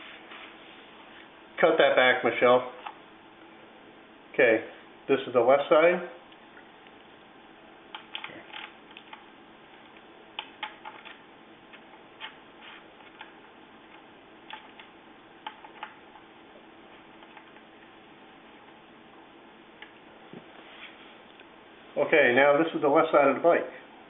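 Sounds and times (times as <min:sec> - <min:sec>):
faint hum: 0:00.0 - 0:24.0
small parts and tools clicking: 0:07.9 - 0:09.2.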